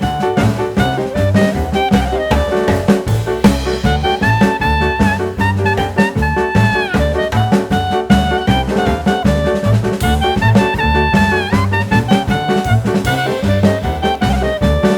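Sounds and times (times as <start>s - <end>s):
upbeat swing jazz music: 0.0s - 14.9s.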